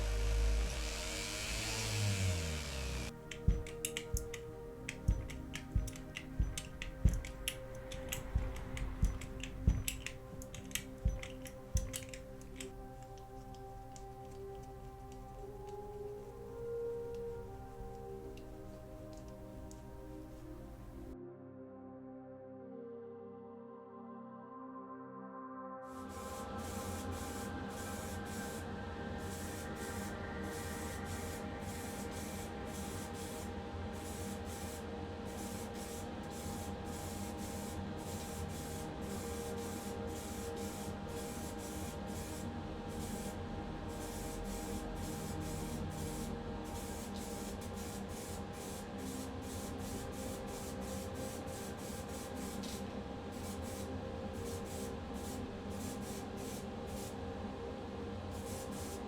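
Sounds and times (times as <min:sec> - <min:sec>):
spray paint hissing in bursts: 0:00.0 - 0:12.2, 0:26.0 - 0:57.2, 0:58.3 - 0:59.0
steady hum: 0:00.0 - 0:21.2, 0:26.1 - 0:59.0.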